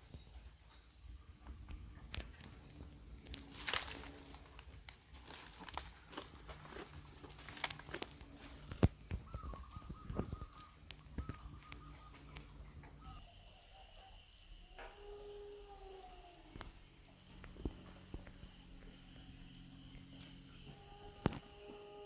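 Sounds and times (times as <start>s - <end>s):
faint animal calls: 0.0s - 16.6s
insect drone: 0.0s - 22.0s
footsteps through undergrowth: 0.1s - 13.2s
twigs cracking: 1.5s - 13.2s.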